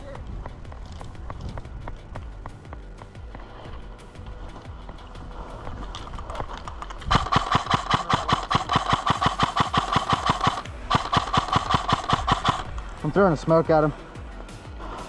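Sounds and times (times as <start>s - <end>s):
airsoft gun firing full auto: 7.0s - 12.6s.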